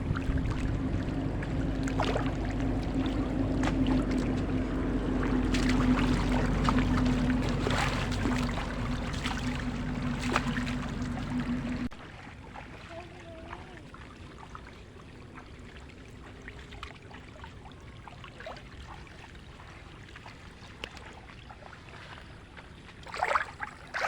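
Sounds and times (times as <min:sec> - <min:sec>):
small engine running steadily: 0:00.0 - 0:12.0.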